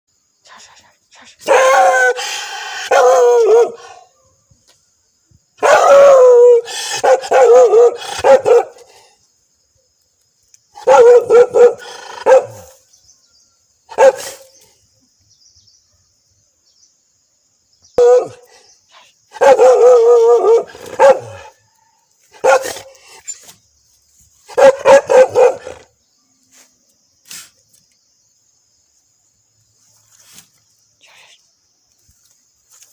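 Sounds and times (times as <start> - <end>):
dog barking aggressively: 5.6 - 8.9, 10.8 - 12.7, 13.9 - 14.4, 19.4 - 21.5, 22.4 - 22.9, 24.5 - 25.9.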